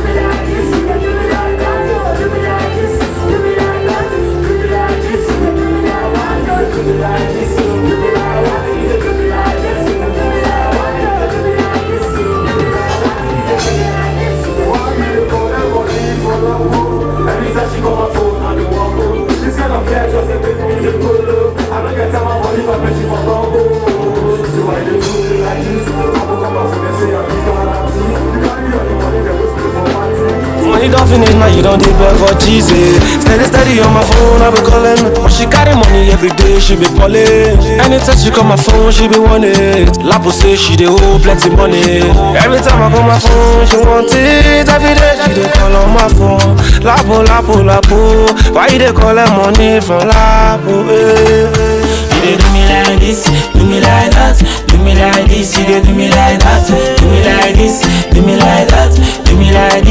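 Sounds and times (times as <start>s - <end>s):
deep bass line: 0.0s - 59.9s
person singing: 0.0s - 59.9s.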